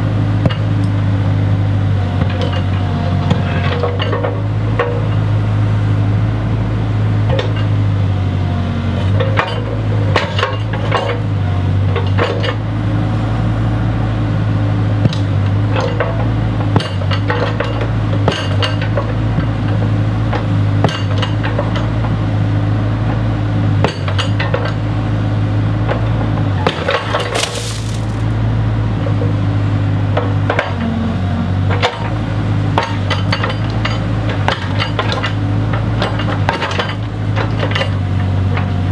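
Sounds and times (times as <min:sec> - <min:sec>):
heavy machine engine running: 0:00.0 - 0:38.9
bricks knocking and clattering: 0:26.6 - 0:28.3.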